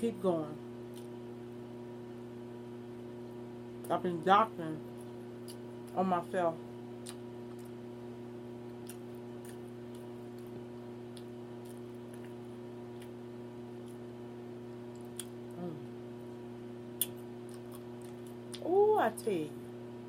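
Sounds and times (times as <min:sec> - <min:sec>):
electrical hum: 0:00.0 - 0:20.0.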